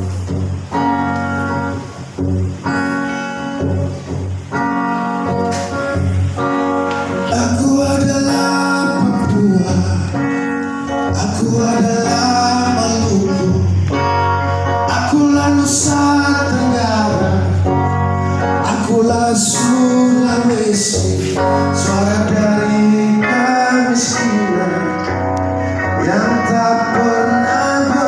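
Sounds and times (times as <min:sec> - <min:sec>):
guitar: 0:00.0 - 0:28.0
steady bass: 0:00.0 - 0:28.0
man singing: 0:07.2 - 0:28.0.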